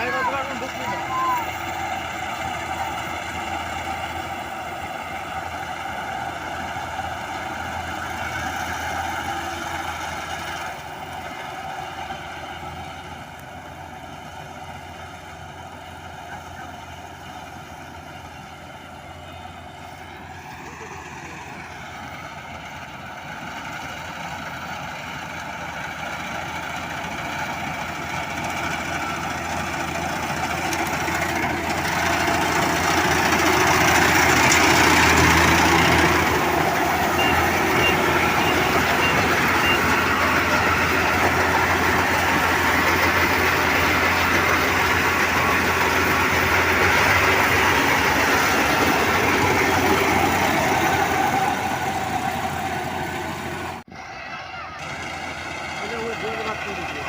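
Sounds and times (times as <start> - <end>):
combine harvester engine running: 0.0 - 57.0
faint high beeps: 37.1 - 40.0.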